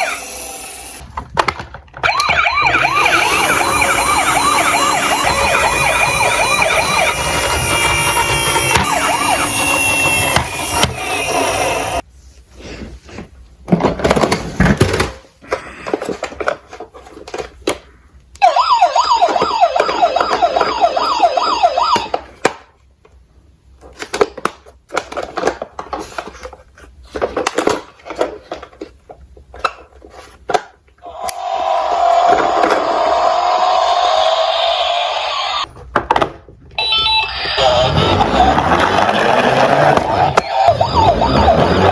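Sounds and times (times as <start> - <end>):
electronic yelp siren: 2.0 - 12.0, 18.4 - 22.2, 31.1 - 35.7, 36.8 - 41.9
toy cars clicking and clacking: 18.9 - 22.6.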